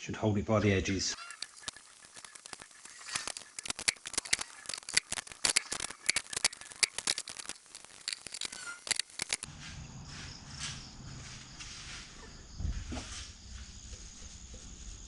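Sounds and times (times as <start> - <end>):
tools and parts clicking: 1.2 - 9.5.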